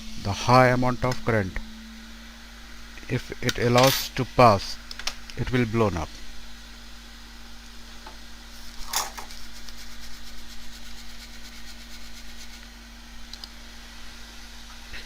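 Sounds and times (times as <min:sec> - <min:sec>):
electrical equipment humming: 0:00.0 - 0:15.0
small click: 0:13.3 - 0:13.6.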